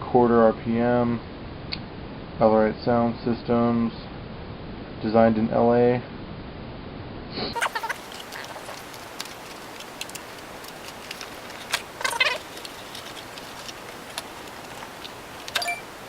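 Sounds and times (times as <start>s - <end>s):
packaging clicks and rustles: 7.6s - 16.0s.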